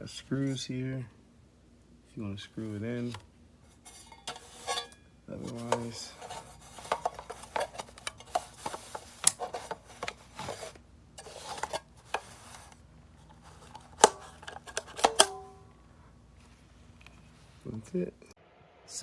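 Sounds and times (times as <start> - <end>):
hard drive scraping plastic casing: 3.8 - 15.6.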